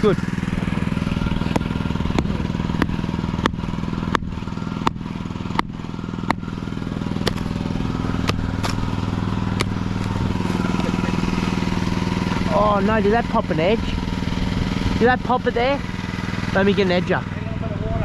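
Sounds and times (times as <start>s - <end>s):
small engine running: 0.0s - 18.0s
sharp engine knock: 0.3s - 12.6s.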